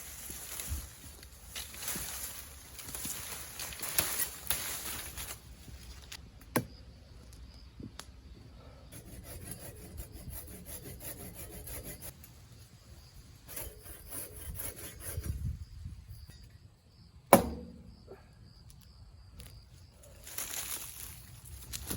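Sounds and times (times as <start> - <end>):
rubbing and scraping on wood: 9.0 - 12.1
sharp knocks: 17.3 - 17.8.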